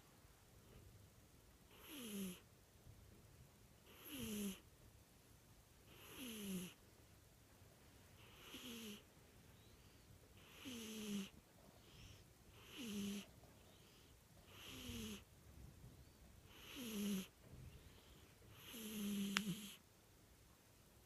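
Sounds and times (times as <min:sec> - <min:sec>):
cat snoring: 0:01.7 - 0:02.4, 0:03.8 - 0:04.6, 0:05.9 - 0:06.8, 0:08.2 - 0:09.1, 0:10.4 - 0:15.3, 0:16.5 - 0:19.8.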